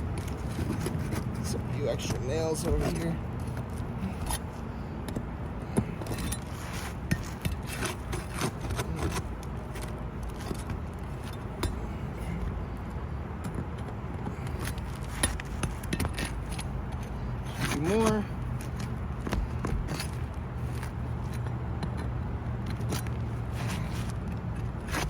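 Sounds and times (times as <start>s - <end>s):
steady low rumble: 0.0s - 25.0s
metal scraping on roof shingles: 5.6s - 11.8s.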